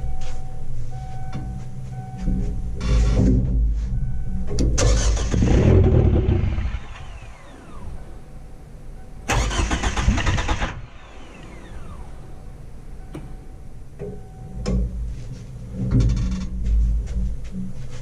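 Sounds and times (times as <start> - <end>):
engine cranking on starter: 4.8 - 8.0, 9.3 - 12.1
starter whine spinning down: 4.8 - 8.2, 9.3 - 12.4.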